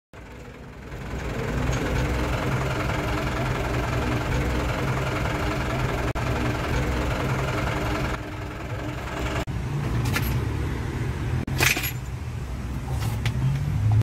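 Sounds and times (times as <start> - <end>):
diesel truck engine idling: 0.1 - 9.6.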